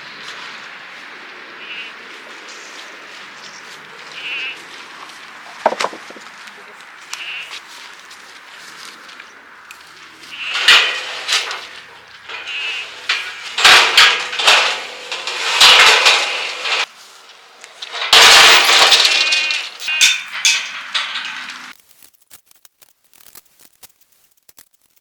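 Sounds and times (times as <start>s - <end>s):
metal panels clanging and rattling: 5.5s - 6.2s, 10.2s - 21.8s.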